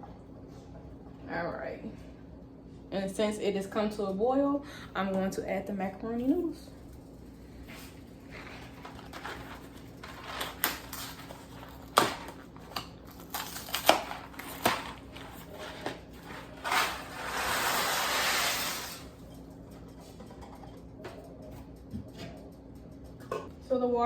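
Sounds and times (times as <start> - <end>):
pasta pouring into pot: 16.2 - 19.1.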